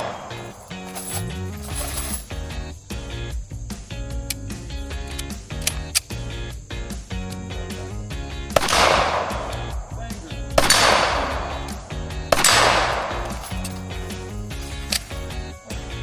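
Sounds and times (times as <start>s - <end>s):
gunshots with echo: 0.0s - 0.6s, 8.5s - 10.0s, 10.6s - 13.6s
background music with beat: 0.0s - 16.0s.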